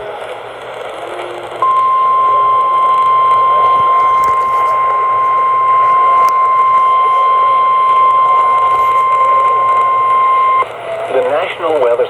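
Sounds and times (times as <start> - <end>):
radio hiss: 0.0 - 12.0
loud steady alarm tone: 1.6 - 11.0.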